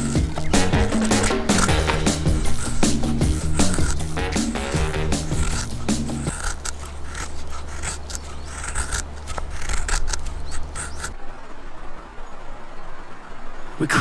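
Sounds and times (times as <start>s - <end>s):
low music bed: 0.0s - 6.4s
sharp snipping strokes: 0.0s - 11.2s.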